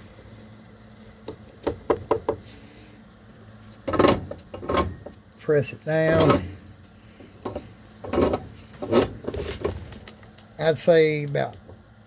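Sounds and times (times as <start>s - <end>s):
loud clunk: 6.1s - 6.6s.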